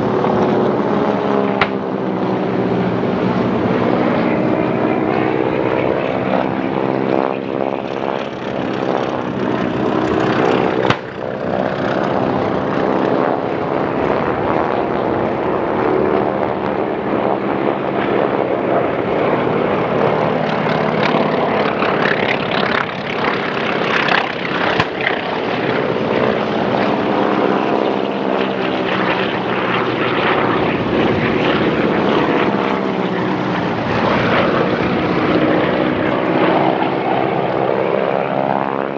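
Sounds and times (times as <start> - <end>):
propeller airplanes droning: 0.0 - 38.9
sharp crack: 10.7 - 11.3, 24.6 - 25.3.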